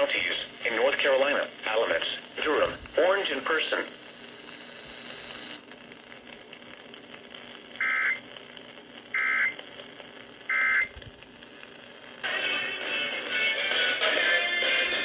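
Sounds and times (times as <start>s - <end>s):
faint radio hiss: 0.0s - 15.0s
buzzy digital tone bursts: 7.0s - 15.0s.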